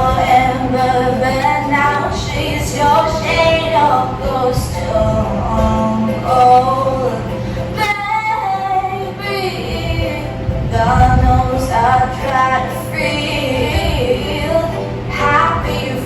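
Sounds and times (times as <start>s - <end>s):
woman singing with music: 0.0s - 16.0s.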